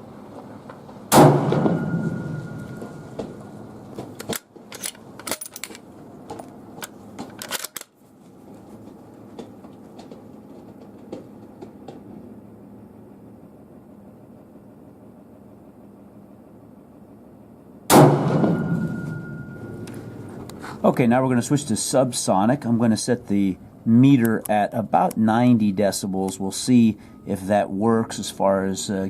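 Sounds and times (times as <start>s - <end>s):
rifle shot crack: 1.1s - 3.4s, 17.9s - 19.8s
rifle bolt clicking: 7.4s - 7.9s.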